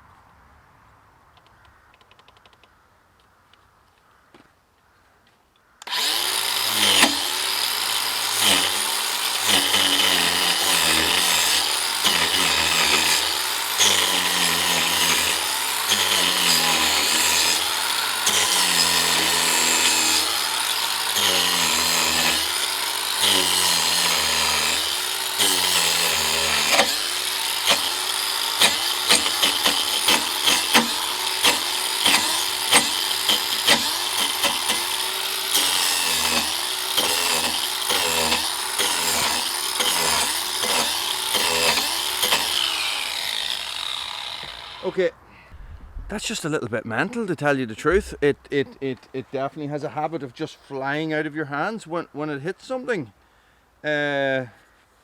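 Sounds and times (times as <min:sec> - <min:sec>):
angle grinder cutting wood: 0:05.8 - 0:45.1, 0:47.9 - 0:48.9.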